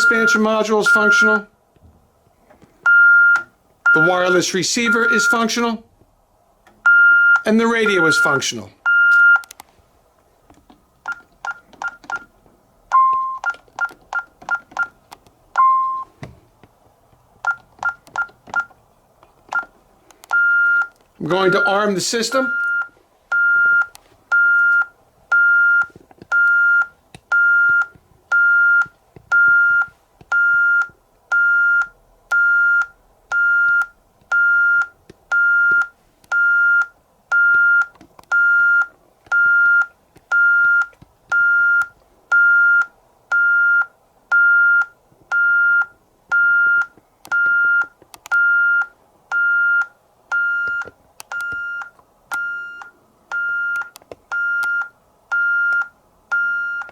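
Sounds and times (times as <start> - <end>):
alarm keypad beeping: 0.0 - 1.4, 2.9 - 4.3, 4.9 - 5.5, 6.9 - 9.5, 12.9 - 14.9, 15.6 - 16.1, 20.3 - 21.8, 22.4 - 56.9.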